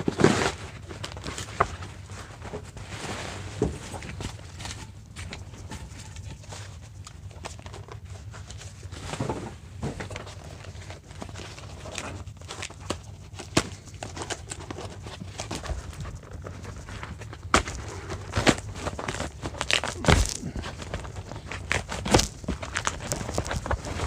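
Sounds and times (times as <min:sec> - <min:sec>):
cardboard package being opened: 0:10.0 - 0:24.0
packing material rustling: 0:10.0 - 0:24.0.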